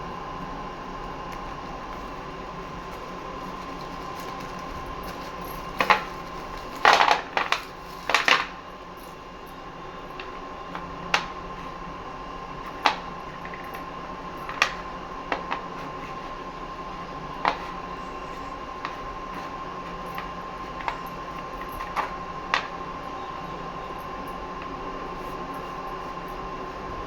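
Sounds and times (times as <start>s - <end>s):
steady hum: 0.0s - 27.0s
small hard pieces clicking: 3.0s - 8.6s.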